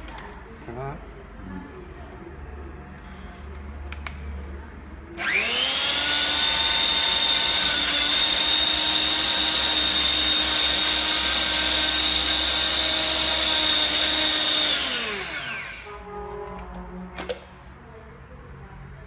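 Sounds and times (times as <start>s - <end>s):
grinder motor whine: 5.2s - 15.9s.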